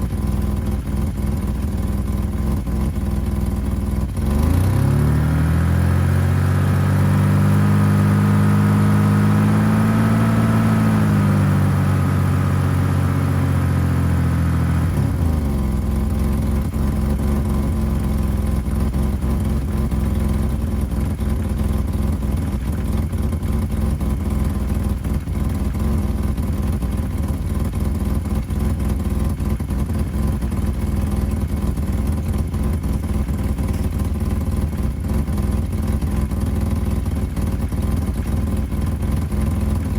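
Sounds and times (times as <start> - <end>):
car engine revving then idling: 0.0 - 39.9.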